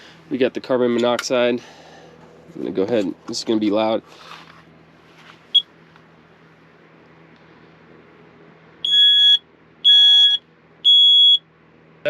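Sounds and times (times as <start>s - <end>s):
high-pitched alarm beep: 8.8s - 11.4s
detector chirp: 8.9s - 11.4s.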